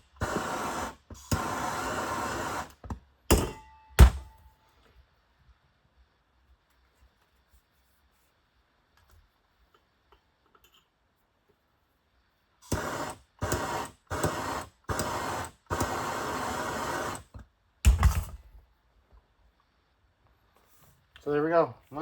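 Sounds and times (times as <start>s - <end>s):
hissing bursts: 0.0s - 2.8s, 12.6s - 17.3s.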